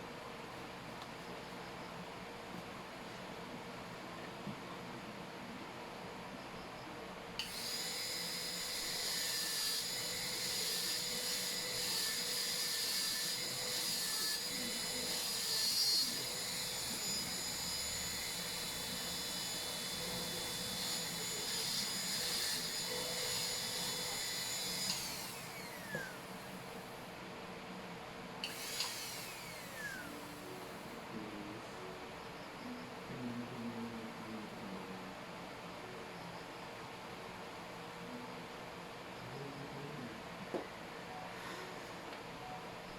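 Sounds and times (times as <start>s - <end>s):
dental drill whining: 7.4s - 27.0s, 28.4s - 30.9s.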